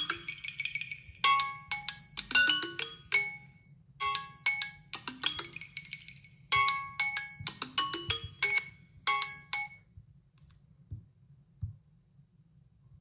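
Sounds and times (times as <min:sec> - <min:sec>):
phone chiming alert melody: 0:00.0 - 0:09.8.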